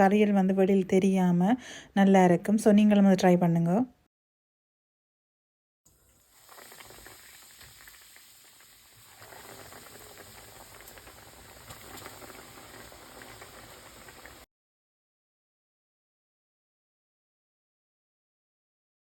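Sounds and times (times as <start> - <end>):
chicken deep-frying in oil: 5.9 - 14.5.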